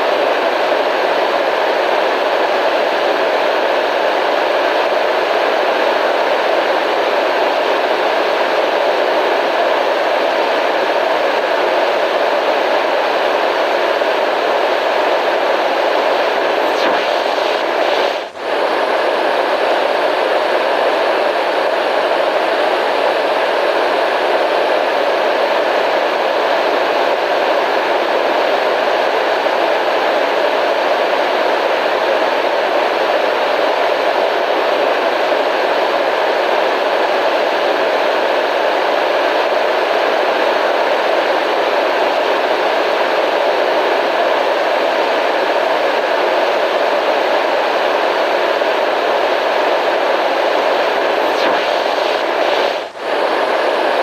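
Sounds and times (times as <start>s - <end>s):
steady white noise hiss: 43.7s - 54.0s.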